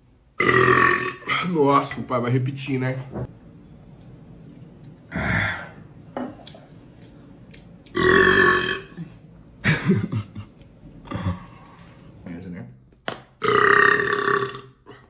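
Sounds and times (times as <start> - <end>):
man burping loudly: 0.4 - 1.4, 8.0 - 9.1, 13.4 - 15.0.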